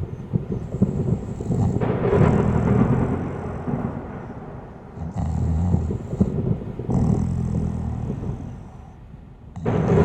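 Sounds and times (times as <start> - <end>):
person snoring: 0.8 - 3.0, 5.0 - 8.9.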